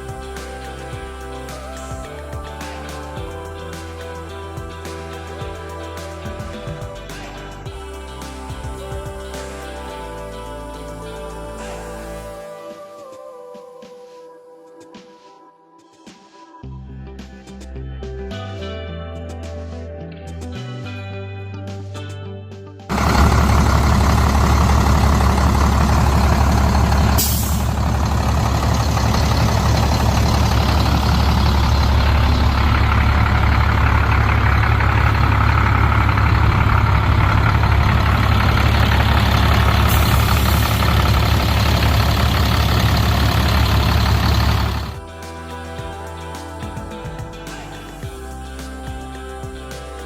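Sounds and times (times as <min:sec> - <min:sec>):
diesel truck engine running: 0:00.0 - 0:11.3, 0:22.9 - 0:45.2
air hisses: 0:25.4 - 0:33.0, 0:38.2 - 0:49.2.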